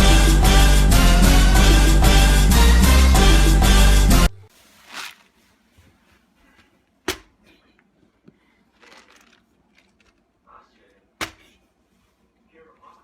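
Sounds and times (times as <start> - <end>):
faint rustling: 4.5 - 10.9.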